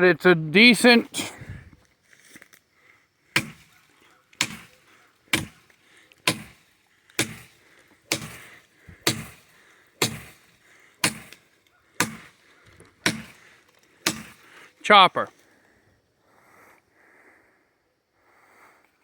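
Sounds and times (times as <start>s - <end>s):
sword chopping into wood: 3.4s - 3.7s, 4.4s - 6.6s, 7.2s - 11.4s, 12.0s - 12.4s, 13.0s - 13.4s, 14.0s - 14.4s.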